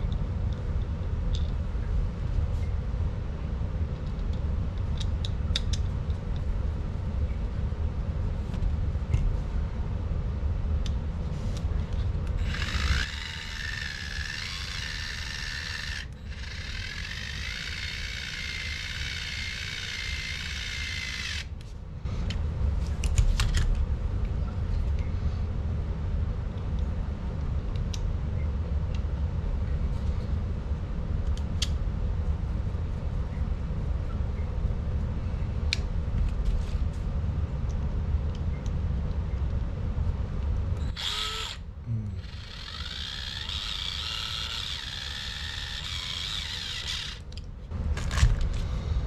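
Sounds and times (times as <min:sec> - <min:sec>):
power driver whining: 0:12.4 - 0:21.6, 0:40.8 - 0:47.4.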